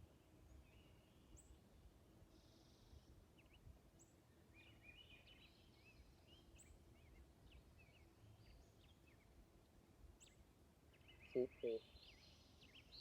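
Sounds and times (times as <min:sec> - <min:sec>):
birds twittering: 0:10.2 - 0:13.0.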